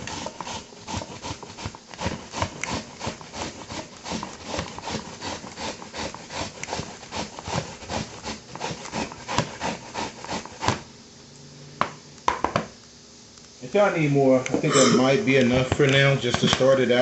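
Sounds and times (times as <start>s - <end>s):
knife chopping cabbage on board: 0.0s - 10.8s.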